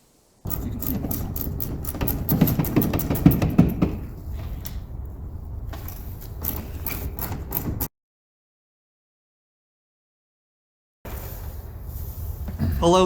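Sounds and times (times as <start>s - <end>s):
socket wrench ratchet clicking: 0.5s - 3.8s.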